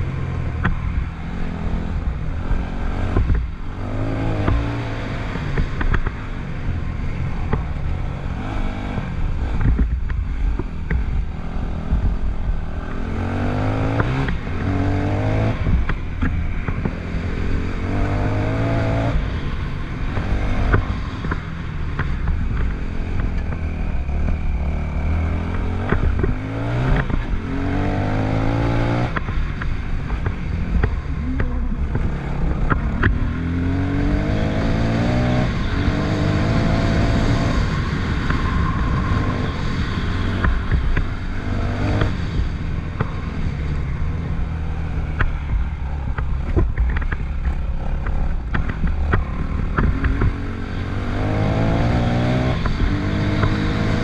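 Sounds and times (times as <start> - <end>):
sharp clicks and clatter: 5.3 - 6.6, 45.1 - 51.0.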